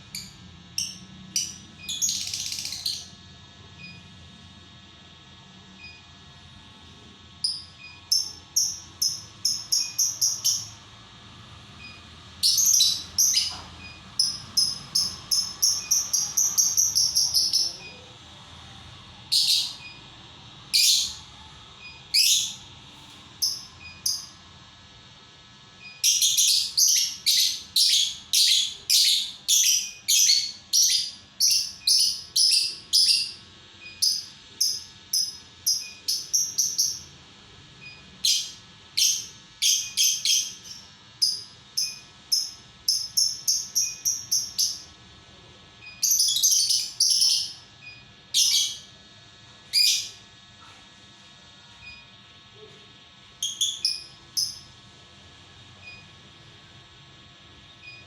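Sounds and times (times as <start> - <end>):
lovebird chirping: 0.0 - 3.2, 7.4 - 10.8, 11.8 - 18.1, 20.7 - 22.7, 23.4 - 24.4, 25.8 - 37.1, 38.2 - 44.9, 45.8 - 48.9, 49.7 - 50.2, 53.4 - 54.7.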